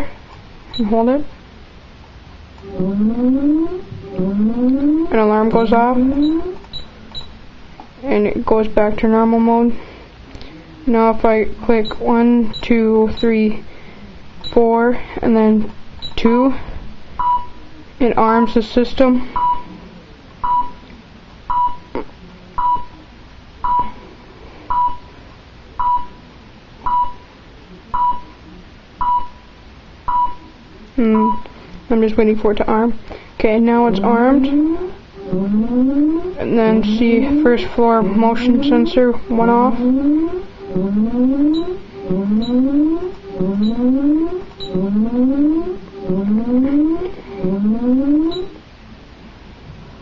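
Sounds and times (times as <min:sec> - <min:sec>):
alarm keypad beeps: 0:00.7 - 0:01.0, 0:02.6 - 0:07.3, 0:11.8 - 0:13.4, 0:14.4 - 0:14.6, 0:16.0 - 0:16.2, 0:29.0 - 0:29.4, 0:31.1 - 0:31.5, 0:38.4 - 0:48.6.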